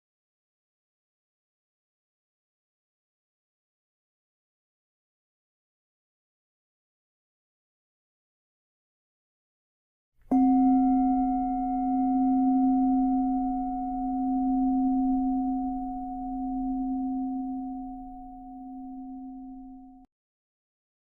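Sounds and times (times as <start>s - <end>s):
meditation bell ringing: 10.3s - 20.1s.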